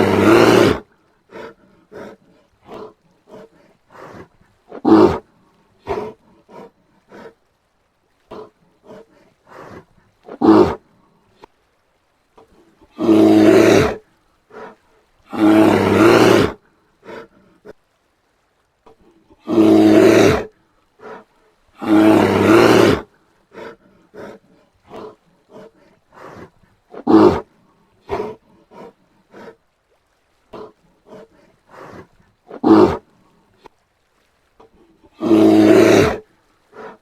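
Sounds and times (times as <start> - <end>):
bear short calls: 0.0 - 5.2
bear roaring: 0.0 - 7.4, 8.3 - 10.8, 12.9 - 17.7, 19.3 - 29.6, 30.5 - 33.0, 35.0 - 37.0.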